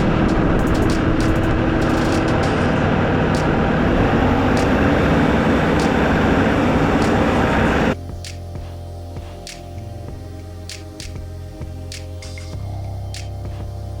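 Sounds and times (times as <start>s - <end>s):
tractor diesel engine running: 0.0s - 8.0s.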